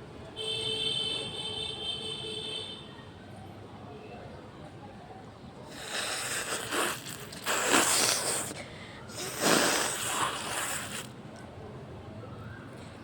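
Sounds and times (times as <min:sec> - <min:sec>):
woman blowing her nose: 0:05.7 - 0:11.1.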